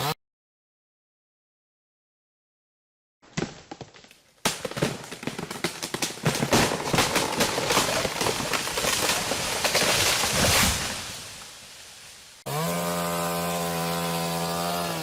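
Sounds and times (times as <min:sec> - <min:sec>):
wood and branches breaking: 0:03.2 - 0:12.4.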